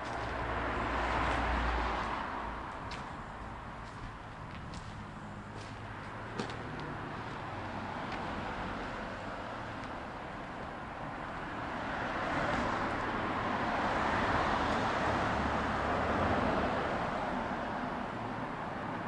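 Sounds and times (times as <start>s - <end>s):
vehicle approaching: 0.0s - 17.8s
road traffic rushing: 0.0s - 19.0s.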